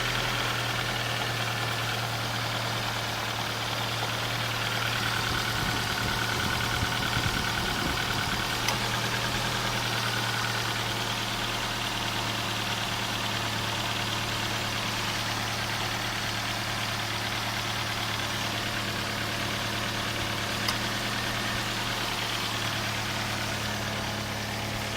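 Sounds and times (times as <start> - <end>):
car engine idling: 0.0 - 24.9
sharp engine clicks: 5.3 - 9.1, 20.5 - 21.2.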